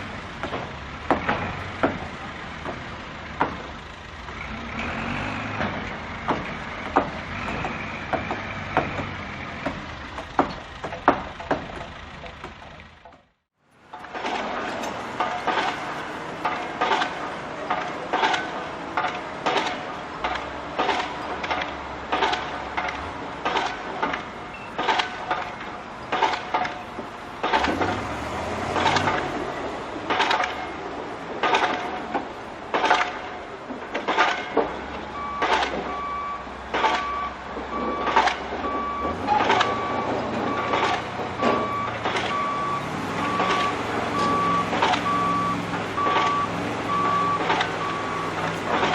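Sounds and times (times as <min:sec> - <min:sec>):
heavy vehicle engine running: 0:00.0 - 0:48.9
sharp rhythmic knocks: 0:05.5 - 0:12.6, 0:14.0 - 0:48.9
reversing alarm beeping: 0:35.0 - 0:48.9.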